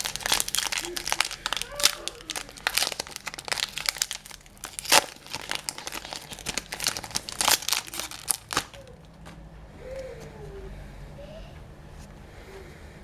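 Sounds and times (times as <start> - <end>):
card pack wrapper crinkling: 0.0 - 9.4.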